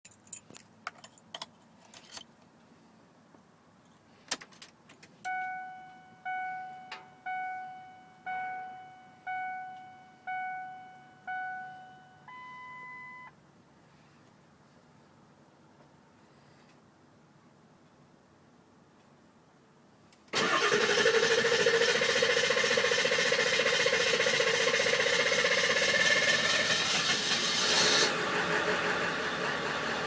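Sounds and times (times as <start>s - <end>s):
steady beep: 5.3s - 13.3s
dashboard warning chime dinging: 5.3s - 13.4s.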